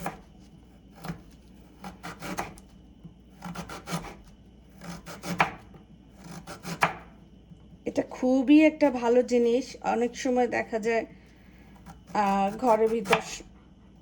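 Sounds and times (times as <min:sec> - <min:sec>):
knife slicing ginger: 0:00.0 - 0:07.2, 0:11.7 - 0:13.5.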